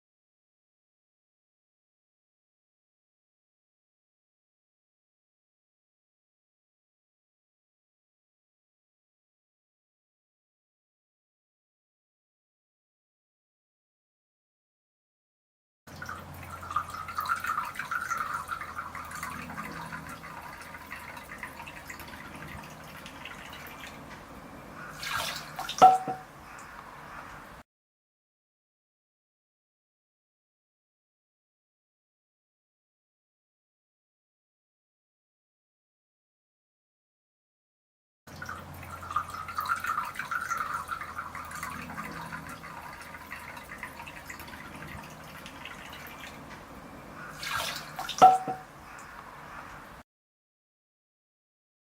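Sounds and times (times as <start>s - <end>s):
water trickling in bamboo fountain: 15.9s - 27.6s, 38.3s - 50.0s.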